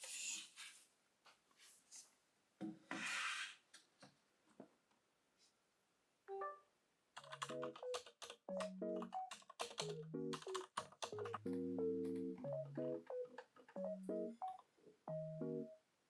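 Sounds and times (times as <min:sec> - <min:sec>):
light keyboard melody: 0:06.3 - 0:15.8.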